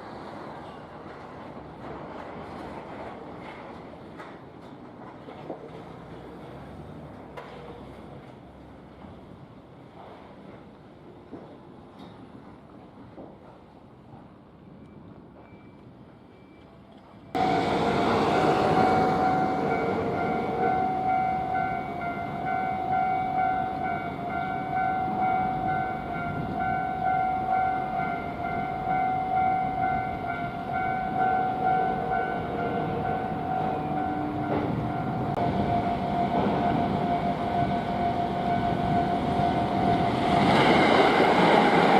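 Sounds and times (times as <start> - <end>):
electric train passing: 17.4 - 41.9
level crossing warning bell: 17.4 - 41.9.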